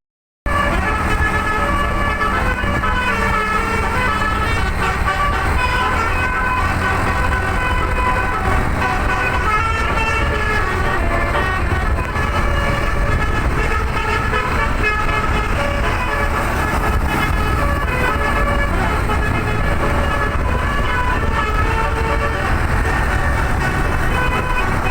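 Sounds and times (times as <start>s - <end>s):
moving bus rumble: 0.5s - 24.9s
musical air horn playing tune: 0.5s - 24.9s.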